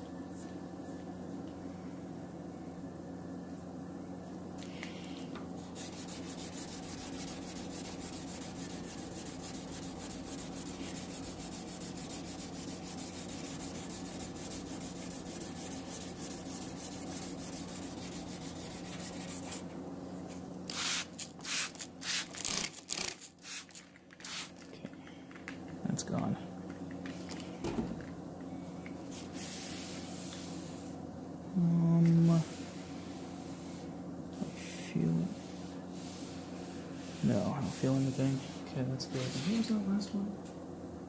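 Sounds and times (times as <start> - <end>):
wet sandpaper rubbing on paint: 5.8 - 19.6.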